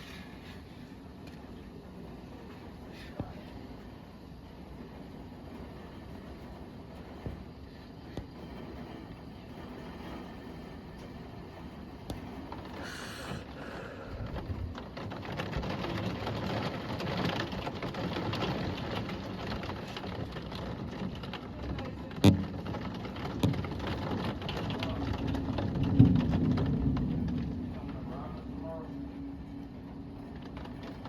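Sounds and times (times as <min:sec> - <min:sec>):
thunderstorm rain rushing: 0:00.0 - 0:31.0.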